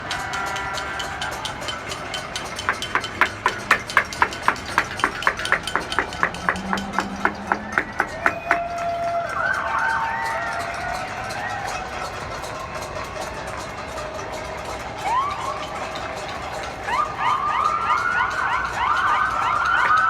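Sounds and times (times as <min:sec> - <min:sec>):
rhythmic ringing banging: 0:01.7 - 0:09.2
sustained tones: 0:02.6 - 0:09.0.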